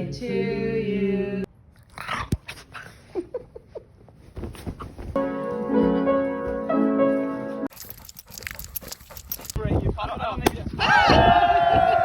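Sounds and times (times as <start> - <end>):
keyboard playing held chords: 5.2 - 7.7.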